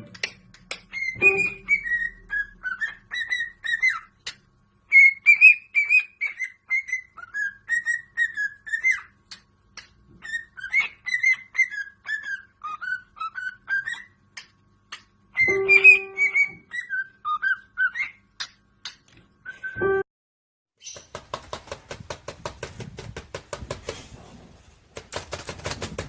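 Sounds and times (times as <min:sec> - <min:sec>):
parrot whistling chirping notes: 0:00.9 - 0:04.1, 0:04.9 - 0:09.2, 0:10.2 - 0:14.2, 0:15.3 - 0:18.2, 0:19.4 - 0:20.0.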